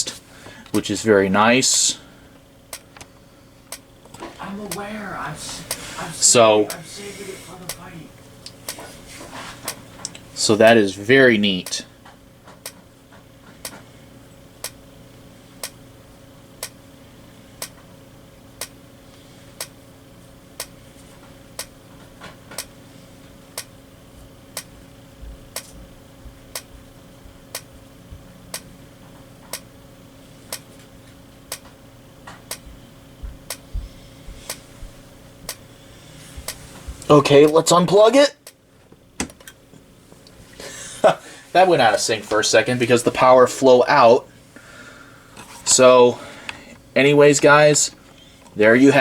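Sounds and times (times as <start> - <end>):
low electrical hum: 0.0 - 49.0
strobe ticking: 3.7 - 8.9, 11.6 - 11.9, 14.6 - 14.8, 15.6 - 15.8, 16.6 - 16.8, 18.5 - 18.8, 19.6 - 19.8, 20.6 - 20.8, 21.5 - 21.8, 23.5 - 23.7, 24.5 - 27.7, 29.5 - 29.7, 31.5 - 31.7, 32.5 - 35.7.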